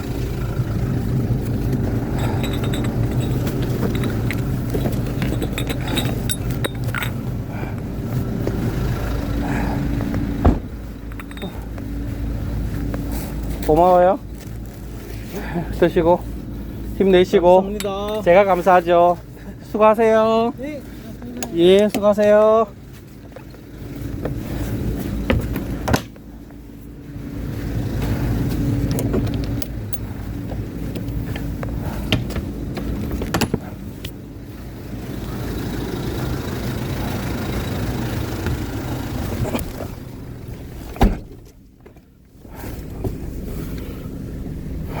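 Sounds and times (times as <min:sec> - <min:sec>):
vehicle engine rumbling: 0:00.0 - 0:45.0
loud thump: 0:10.4 - 0:10.8.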